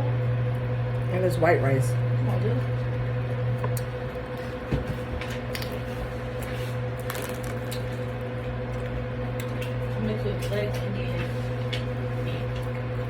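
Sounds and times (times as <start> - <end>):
steady low hum: 0.0 - 13.0
squishy mouth eating sounds: 5.5 - 13.0.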